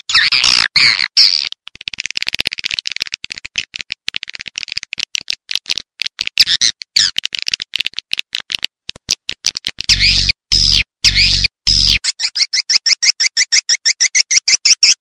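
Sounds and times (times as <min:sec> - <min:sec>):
twittering squeaks: 0:00.0 - 0:01.6, 0:06.4 - 0:07.4, 0:09.8 - 0:15.0
swiftlet clicks and chirps: 0:04.4 - 0:15.0.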